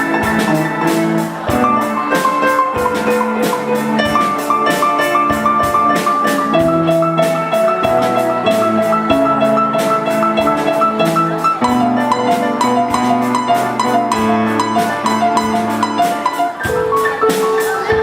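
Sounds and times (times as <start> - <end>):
drum kit beat: 0.0 - 18.0.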